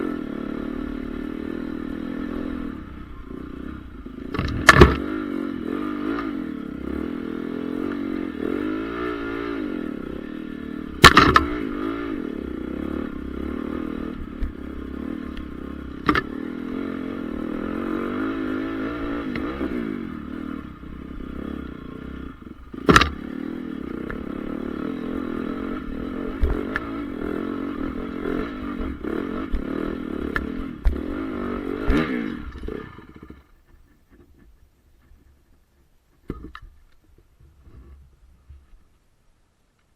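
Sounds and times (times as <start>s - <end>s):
motocross engine revving: 0.0s - 35.2s
sharp loud knocks: 4.3s - 5.1s, 11.0s - 11.6s, 22.8s - 23.3s.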